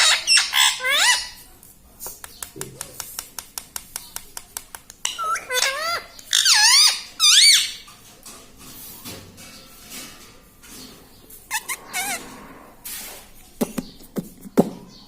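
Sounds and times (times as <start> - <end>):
parakeet squeaky calls: 0.0 - 1.4, 5.1 - 7.8, 11.5 - 12.2.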